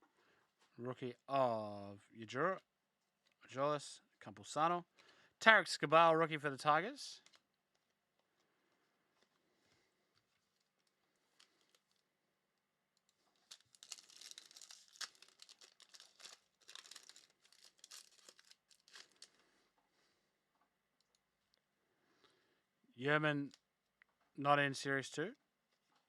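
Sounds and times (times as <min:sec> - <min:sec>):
foil wrapper tearing and crumpling: 0:10.5 - 0:12.0, 0:13.3 - 0:19.4.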